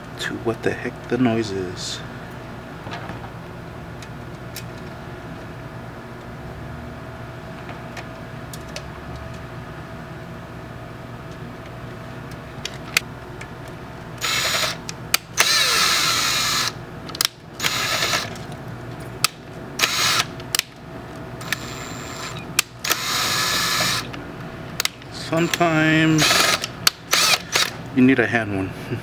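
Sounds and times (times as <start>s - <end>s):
steady low hum: 0.0s - 29.0s
power drill driving screws: 14.2s - 16.8s, 17.6s - 18.4s, 19.8s - 20.4s, 21.4s - 24.1s, 25.2s - 27.8s
sharp clicks: 24.8s - 27.8s.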